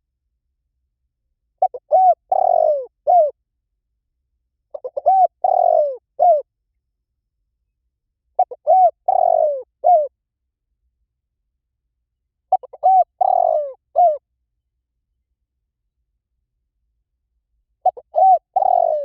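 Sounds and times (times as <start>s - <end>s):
dove cooing: 1.6s - 3.4s, 4.7s - 6.5s, 8.4s - 10.1s, 12.5s - 14.2s, 17.8s - 19.0s.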